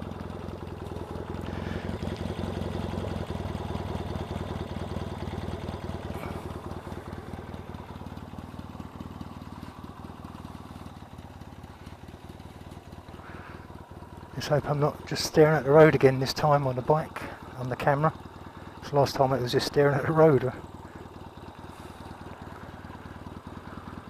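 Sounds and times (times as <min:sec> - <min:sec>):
motorcycle engine idling: 0:00.0 - 0:24.0.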